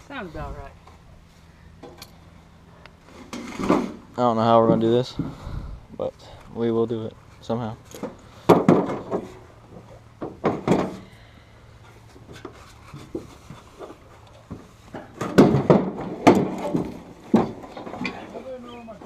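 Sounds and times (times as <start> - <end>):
knocks and clunks of handled objects: 7.8 - 11.2, 11.8 - 18.4.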